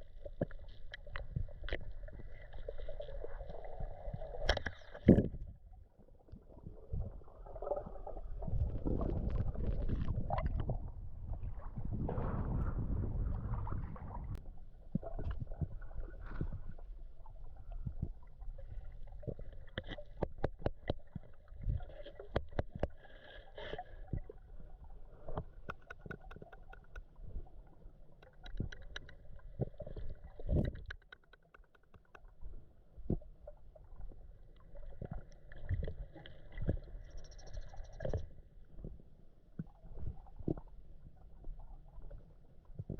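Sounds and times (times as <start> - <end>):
underwater rumbling and gurgling: 0.0 - 42.9
sharp underwater clicks: 19.7 - 21.2, 25.3 - 27.3, 28.1 - 32.4.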